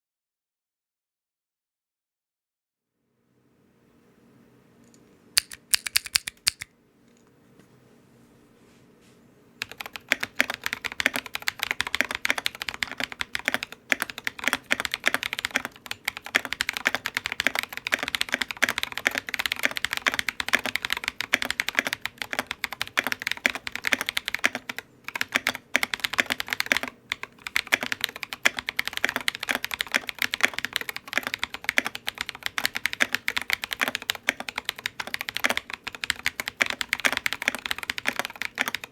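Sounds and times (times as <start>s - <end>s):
mechanical keyboard typing: 5.4s - 6.7s, 9.6s - 38.9s.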